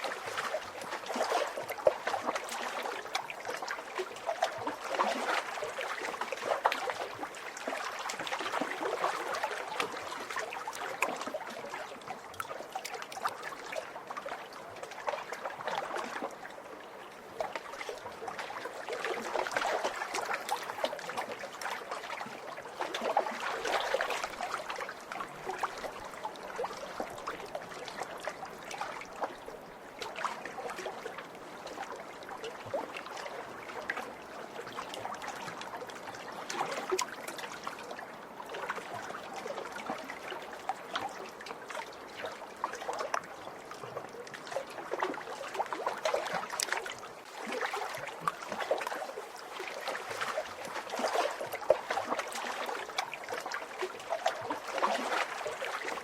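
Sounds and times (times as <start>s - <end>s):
small waves lapping and splashing: 0.0s - 56.0s.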